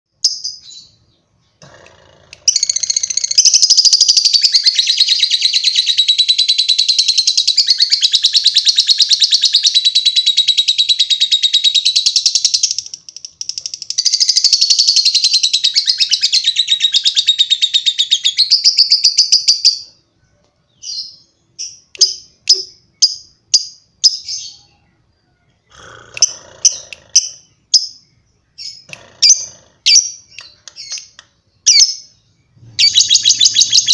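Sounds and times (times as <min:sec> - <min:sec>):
bird chirps: 0:00.1 - 0:01.8, 0:02.4 - 0:33.9
lovebird chattering trill: 0:01.7 - 0:19.9, 0:25.7 - 0:33.9.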